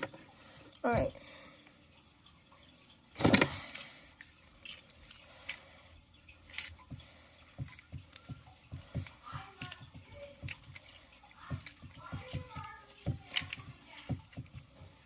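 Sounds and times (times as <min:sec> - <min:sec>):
plastic puzzle clattering: 0:03.2 - 0:05.7, 0:06.4 - 0:15.0.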